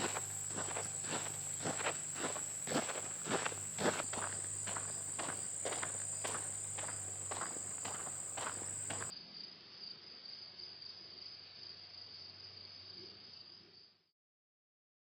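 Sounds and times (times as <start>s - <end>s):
footsteps on trail: 0.0s - 9.1s
high insect drone: 0.0s - 9.8s
high-pitched insect chorus: 0.0s - 13.6s.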